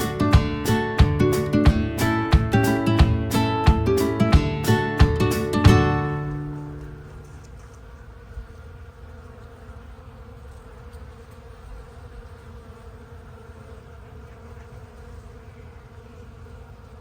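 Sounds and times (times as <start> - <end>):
steady buzzing drone: 0.0 - 10.0.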